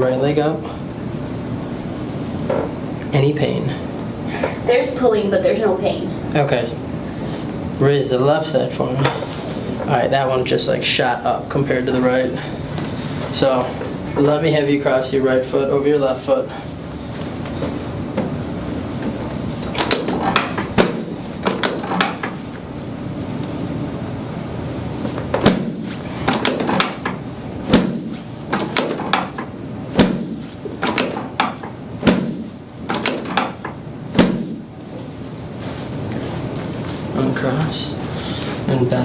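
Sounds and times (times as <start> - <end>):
sharp knocks and clunks: 19.0 - 22.4, 25.3 - 34.7.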